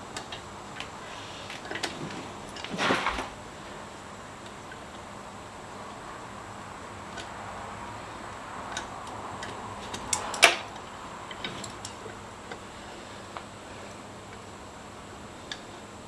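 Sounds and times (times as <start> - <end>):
hand tools and bolts clicking: 8.7 - 12.6.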